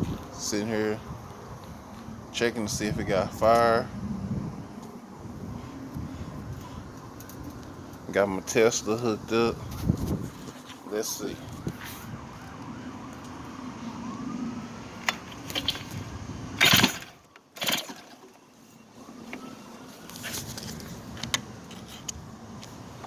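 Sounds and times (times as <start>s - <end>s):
recoil starter pull rasp: 15.0s - 16.0s, 16.6s - 18.4s.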